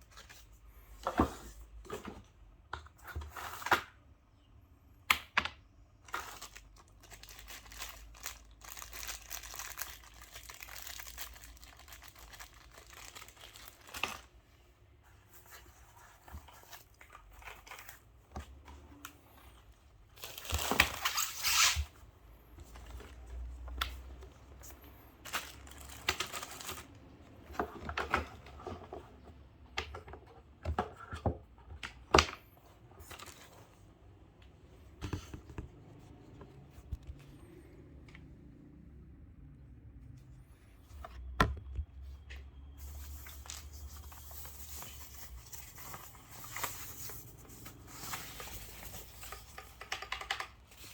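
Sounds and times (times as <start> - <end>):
plastic packaging crinkling: 6.1 - 14.3, 25.2 - 27.1.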